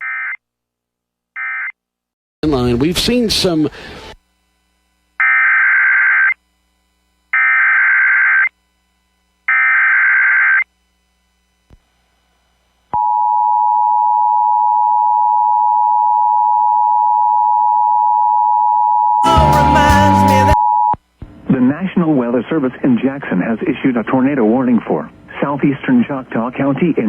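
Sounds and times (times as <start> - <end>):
two-tone attention signal: 13.0 - 21.0
loud sound: 19.2 - 20.6.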